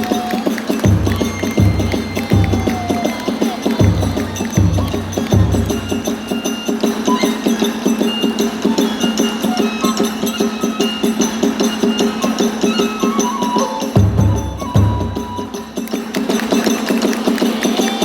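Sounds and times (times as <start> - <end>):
fast even drum beat: 0.0 - 8.7, 14.0 - 18.0
flute-like melody: 0.0 - 18.0.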